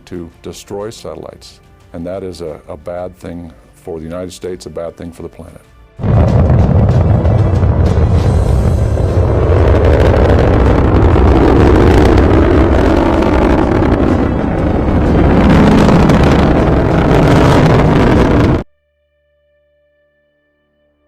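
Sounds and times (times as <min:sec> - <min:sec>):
loud steady roar: 0:06.0 - 0:18.6.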